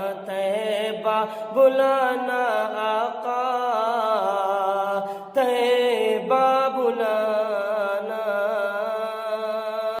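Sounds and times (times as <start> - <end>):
person singing without words: 0.0 - 10.0.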